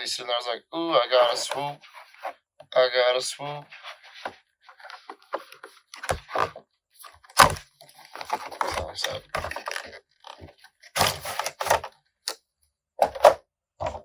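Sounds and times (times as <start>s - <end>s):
packaging crackling and ripping: 7.3s - 11.8s.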